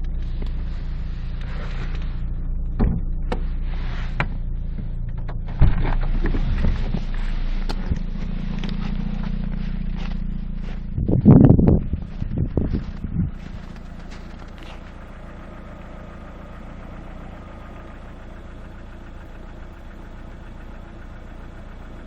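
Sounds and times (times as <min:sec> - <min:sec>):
petrol engine humming: 0:00.0 - 0:22.0
sharp engine knocks: 0:02.6 - 0:03.5, 0:04.2 - 0:08.8.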